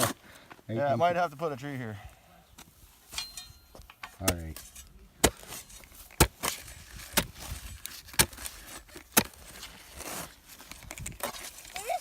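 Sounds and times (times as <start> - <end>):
digging tool striking hard ground: 3.1 - 11.6.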